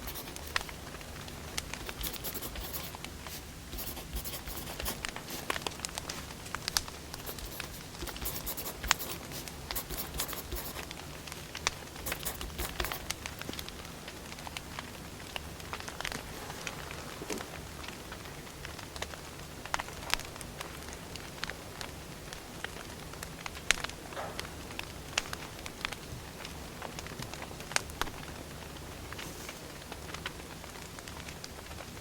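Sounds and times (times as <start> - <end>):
steady low hum: 0.0 - 13.4.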